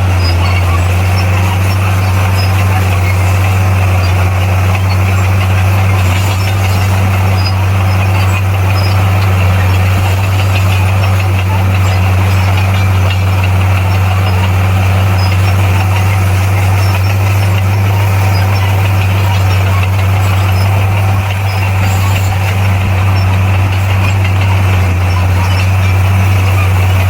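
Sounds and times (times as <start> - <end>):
bulldozer diesel engine droning: 0.0 - 27.0.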